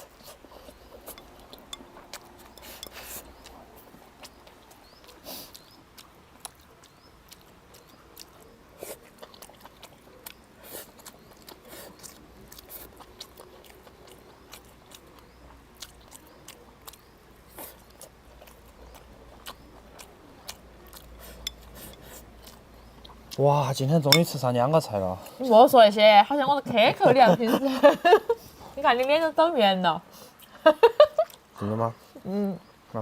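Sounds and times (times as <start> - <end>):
clicks and scrapes of eating: 0.0 - 23.4
people chewing food: 0.0 - 33.0.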